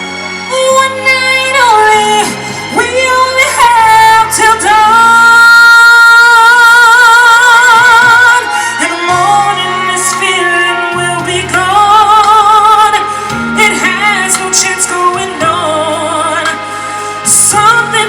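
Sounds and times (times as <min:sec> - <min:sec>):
instrumental backing: 0:00.0 - 0:18.0
woman singing: 0:00.4 - 0:18.0.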